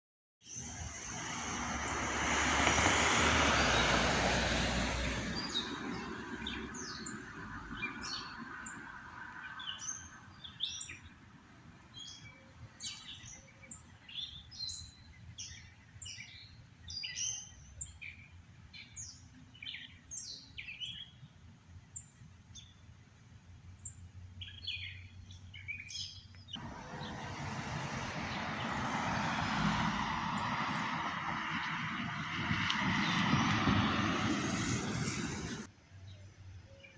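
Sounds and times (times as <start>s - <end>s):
songbirds chirping: 0.4s - 36.9s
vehicle engine rush: 0.6s - 8.2s, 26.6s - 35.7s.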